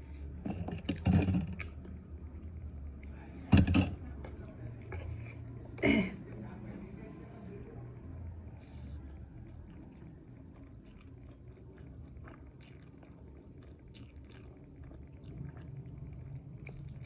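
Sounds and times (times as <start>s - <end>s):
person chewing food: 8.7s - 17.0s.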